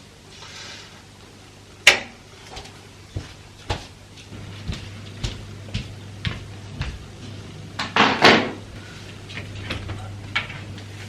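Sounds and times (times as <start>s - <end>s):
steady low hum: 0.0s - 11.0s
shoes clicking on hard floor: 2.5s - 7.5s.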